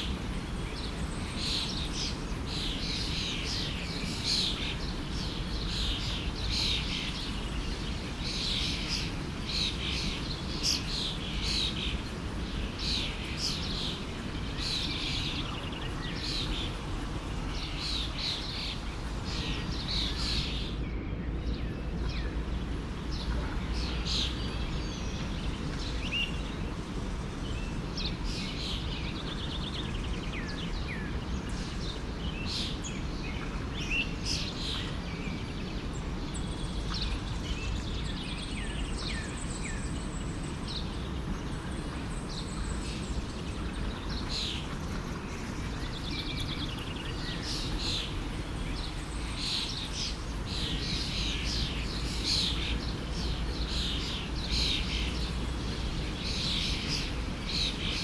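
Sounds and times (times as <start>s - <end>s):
birds chirping and singing: 21.5s - 31.2s
stream flowing: 21.8s - 28.9s.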